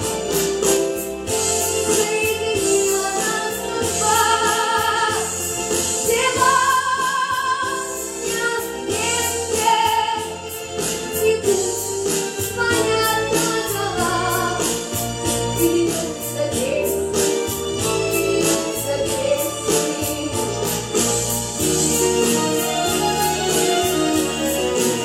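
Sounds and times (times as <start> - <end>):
band accompaniment: 0.0 - 25.0
person singing with vibrato: 1.4 - 25.0.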